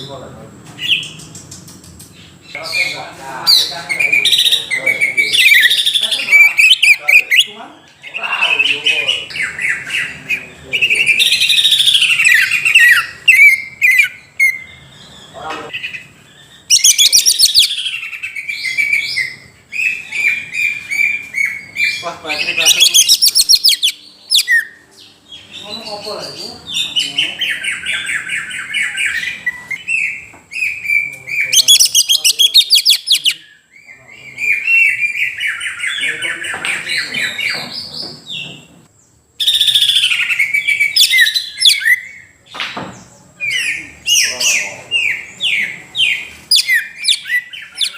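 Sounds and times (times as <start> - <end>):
bird warbling and whistling: 2.2 - 38.4, 39.4 - 42.3, 43.4 - 47.9.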